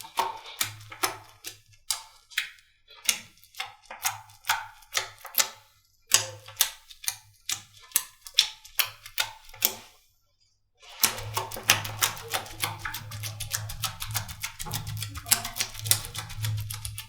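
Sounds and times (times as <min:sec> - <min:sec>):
slime squeezed wet clicks: 0:11.0 - 0:17.0.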